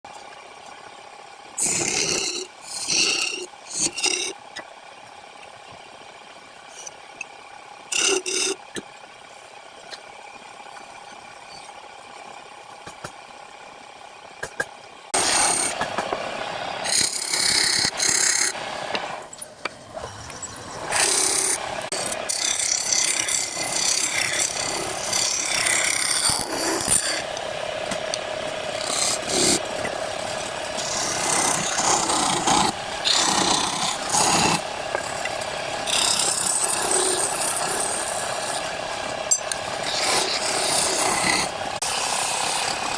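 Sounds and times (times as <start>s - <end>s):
tool scraping wood on lathe: 15.2s - 42.9s
wood lathe humming: 15.2s - 42.9s.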